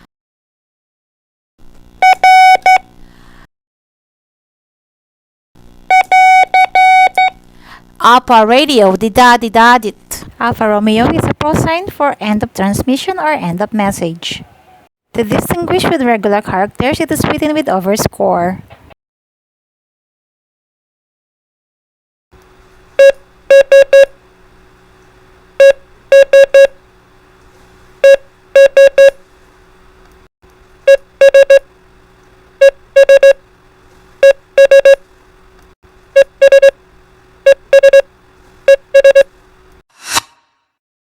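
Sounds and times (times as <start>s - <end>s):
morse code beeps: 2.0s - 2.8s, 5.9s - 7.4s, 23.0s - 24.1s, 25.6s - 26.8s, 28.0s - 29.2s, 30.9s - 31.7s, 32.6s - 33.4s, 34.2s - 35.0s, 36.2s - 36.8s, 37.5s - 38.1s, 38.7s - 39.3s.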